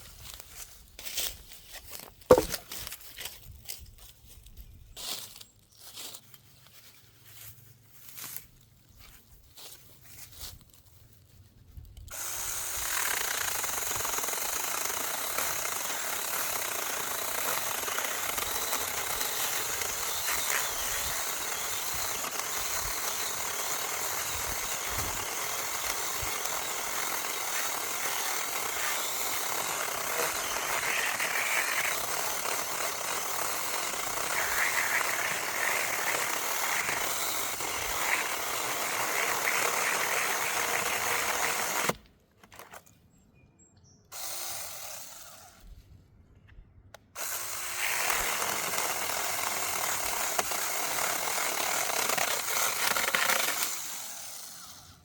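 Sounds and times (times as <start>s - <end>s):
electric chainsaw cutting branch: 2.3s - 2.6s, 12.1s - 42.8s, 44.1s - 45.7s, 47.2s - 55.0s.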